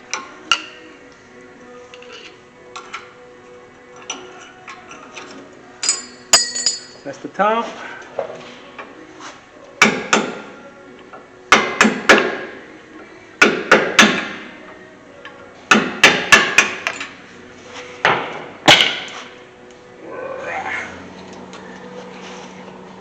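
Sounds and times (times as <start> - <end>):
hammer striking metal: 5.8 - 7.0.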